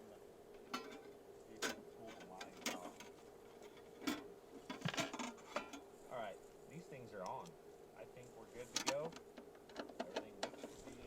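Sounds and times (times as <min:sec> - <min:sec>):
faint steady hum: 0:00.0 - 0:11.0
clicks and knocks of handled tools: 0:08.7 - 0:11.0.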